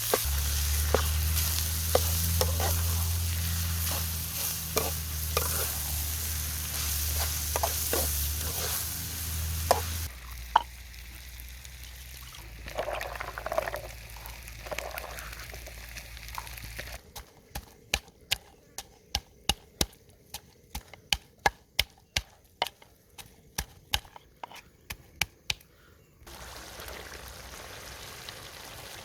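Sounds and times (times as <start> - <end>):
food sizzling in a pan: 0.0 - 17.0, 26.3 - 29.0
utensil stirring and clicking: 1.8 - 5.9.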